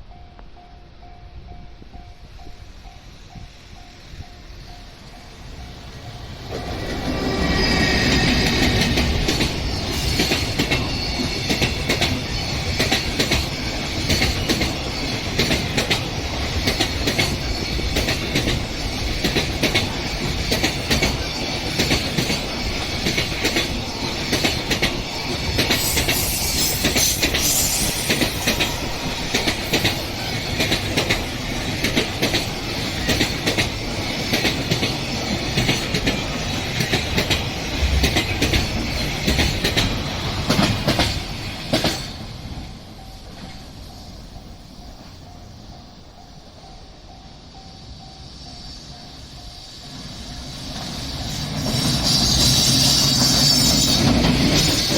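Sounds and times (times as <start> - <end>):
high wheel squeal: 3.0 - 12.8, 23.7 - 30.6, 47.6 - 54.9
train wheels clattering over rail joints: 6.1 - 43.9, 50.0 - 54.9.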